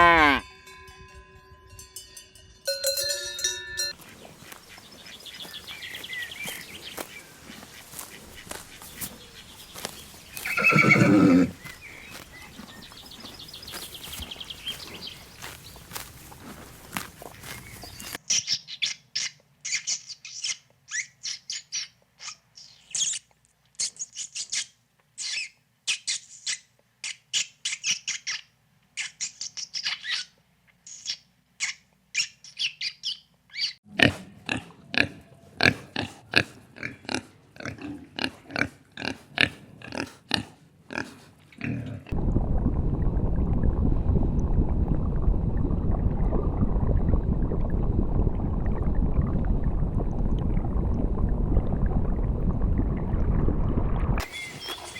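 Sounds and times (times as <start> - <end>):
high-pitched animal squeals: 10.4 - 11.6.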